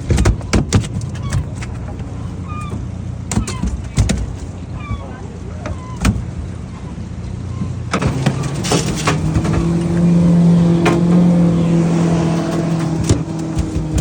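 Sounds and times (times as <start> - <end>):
outboard motor running: 0.0 - 14.0
knocks and clicks: 12.5 - 14.0.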